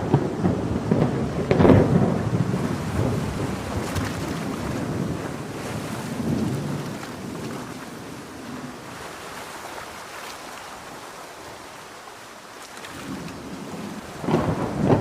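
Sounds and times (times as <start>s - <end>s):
low roll of thunder: 0.0s - 9.0s, 13.0s - 15.0s
heavy rain falling: 0.0s - 10.1s, 10.7s - 15.0s.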